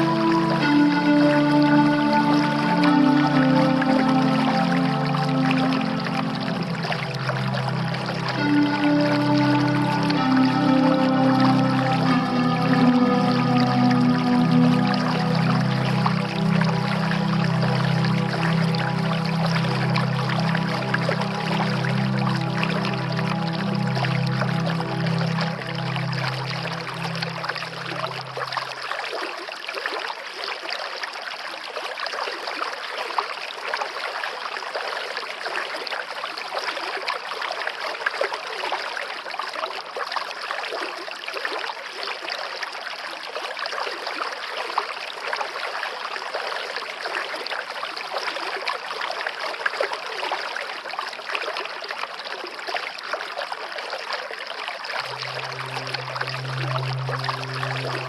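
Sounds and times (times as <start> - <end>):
stream running: 0.0 - 58.0.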